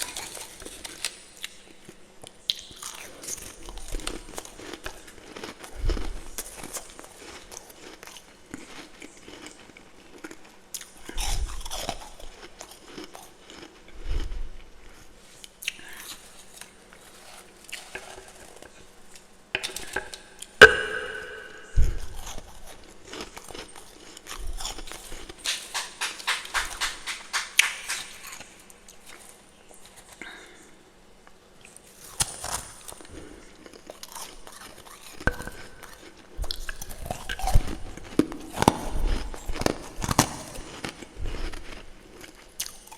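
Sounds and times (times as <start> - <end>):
person chewing frost crunching: 0.0 - 30.6, 31.6 - 42.9
sharp knock with ring: 20.6 - 21.8.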